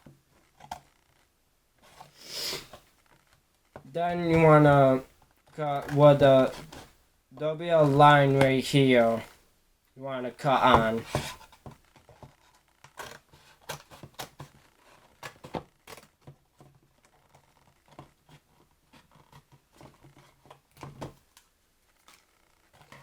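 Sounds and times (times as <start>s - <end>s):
scissors snipping cardboard: 12.8s - 16.3s.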